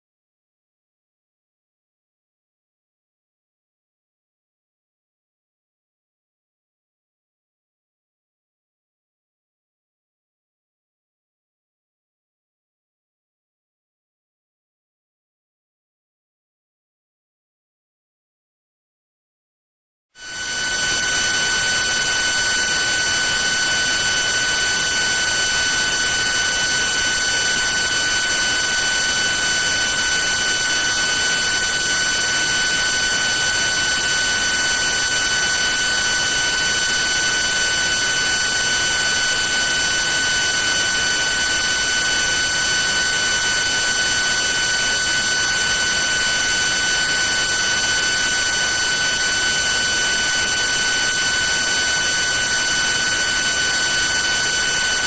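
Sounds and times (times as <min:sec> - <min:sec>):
spindle high-pitched whine: 0:20.2 - 0:55.0.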